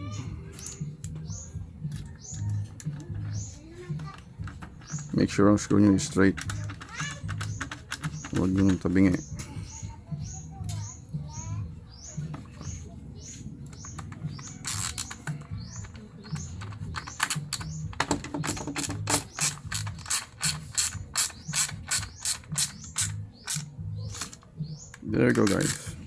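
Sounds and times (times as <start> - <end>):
ratcheting screwdriver clicks: 13.7 - 25.9.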